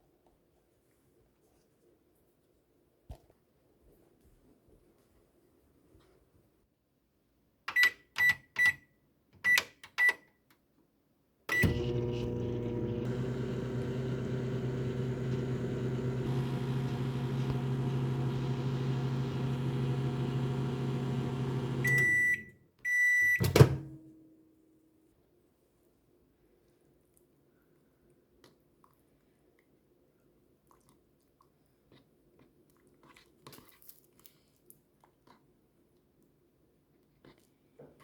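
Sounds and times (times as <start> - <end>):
microwave humming: 11.5 - 22.4
long microwave beeps: 11.5 - 23.6
microwave keypad beeps: 16.3 - 23.6.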